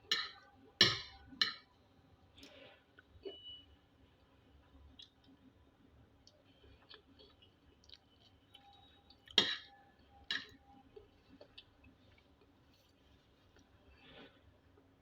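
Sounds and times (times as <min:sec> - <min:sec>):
small clicks of eating: 0:04.2 - 0:13.8.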